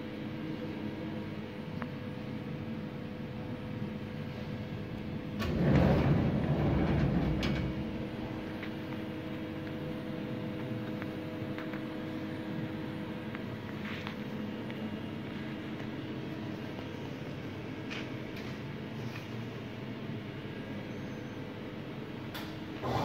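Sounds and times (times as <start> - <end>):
machine humming: 0.0 - 16.9.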